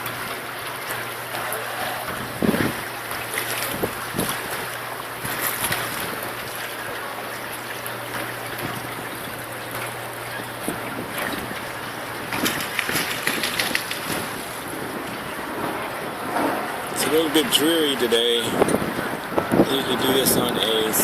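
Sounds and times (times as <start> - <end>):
boat engine humming: 0.0 - 21.0
water wash: 0.0 - 21.0
wind noise: 2.1 - 2.9, 3.6 - 4.6, 10.5 - 21.0.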